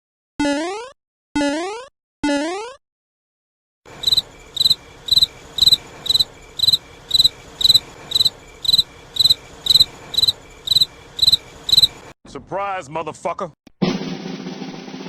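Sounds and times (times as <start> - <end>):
cricket chirping: 3.9 - 12.1.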